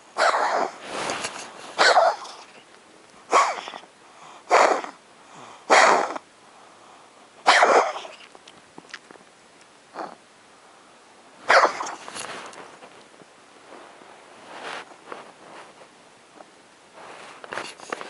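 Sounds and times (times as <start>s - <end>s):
pet coughing harshly: 0.2s - 0.8s, 1.8s - 2.4s, 3.3s - 3.9s, 4.5s - 5.0s, 5.7s - 6.2s, 7.4s - 8.2s, 11.5s - 12.0s.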